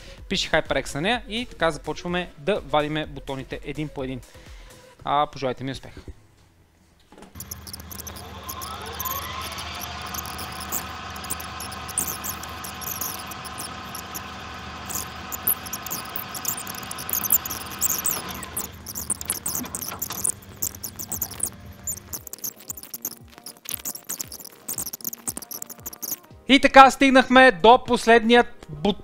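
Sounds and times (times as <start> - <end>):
keycaps clicking on keyboard: 7.4 - 14.3, 14.9 - 26.3
steady low hum: 7.4 - 26.2.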